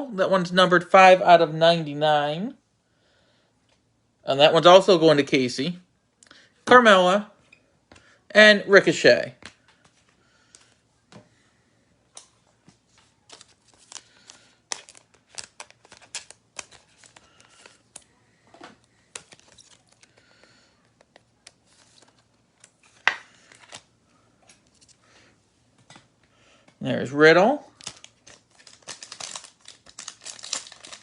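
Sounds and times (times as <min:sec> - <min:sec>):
cards and plastic packaging rustling: 0:12.1 - 0:26.8, 0:27.4 - 0:31.0.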